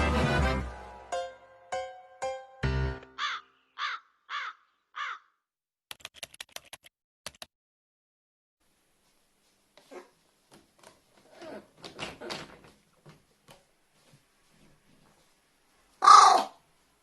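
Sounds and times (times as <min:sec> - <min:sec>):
crow cawing: 0:03.2 - 0:05.4, 0:16.0 - 0:16.6.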